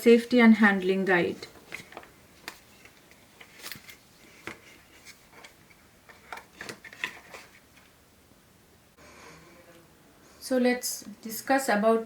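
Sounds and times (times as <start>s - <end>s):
packaging rustling: 1.6s - 7.9s.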